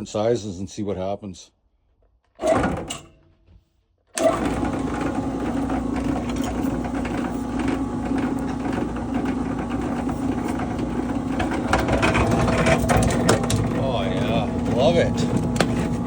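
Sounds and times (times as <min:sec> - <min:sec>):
wire-stripping machine motor humming: 0:04.2 - 0:16.0.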